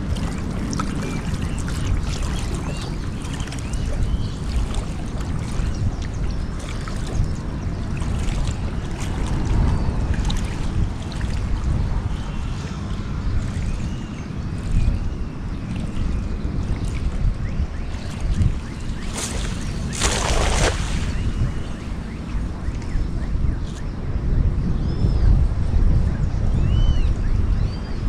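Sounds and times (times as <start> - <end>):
wind rumble on microphone: 0.0 - 28.0.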